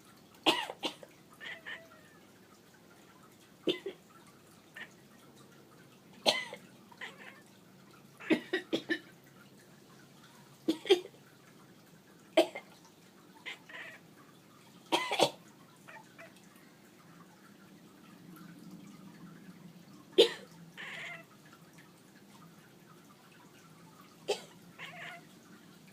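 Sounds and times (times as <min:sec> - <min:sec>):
cat coughing: 0:00.4 - 0:02.1, 0:03.6 - 0:04.1, 0:06.2 - 0:07.4, 0:08.2 - 0:09.2, 0:10.6 - 0:11.2, 0:12.3 - 0:12.8, 0:13.4 - 0:14.0, 0:14.9 - 0:16.3, 0:20.2 - 0:21.2, 0:24.2 - 0:25.2.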